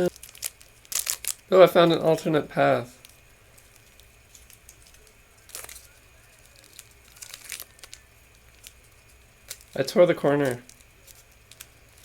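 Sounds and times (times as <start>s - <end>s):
plastic wrapper crinkling: 0.0s - 2.3s, 2.9s - 12.0s.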